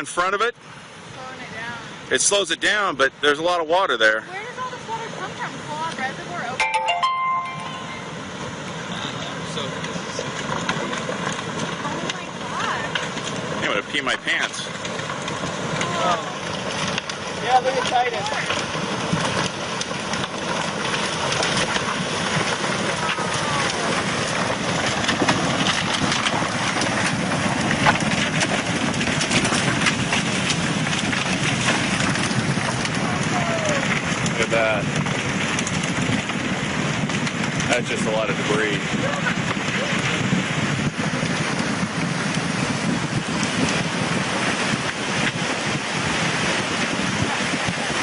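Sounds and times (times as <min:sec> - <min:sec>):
torrent of water rushing: 0:00.0 - 0:48.0
debris cracking and clicking: 0:09.8 - 0:45.8.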